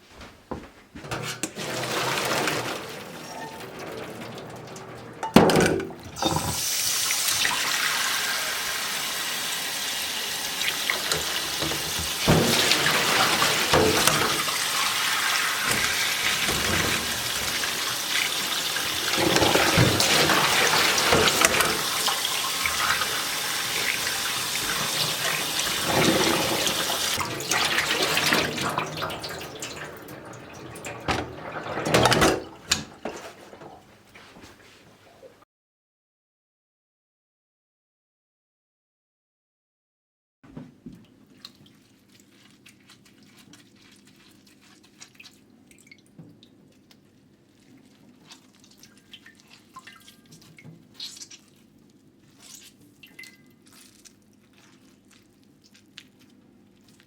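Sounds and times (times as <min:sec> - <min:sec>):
tap water running into sink: 0:01.0 - 0:33.9.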